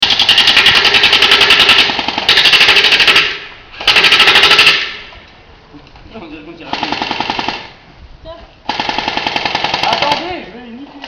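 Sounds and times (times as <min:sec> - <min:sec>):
airsoft gun firing bursts: 0:00.0 - 0:05.0, 0:06.7 - 0:07.7, 0:08.7 - 0:10.4.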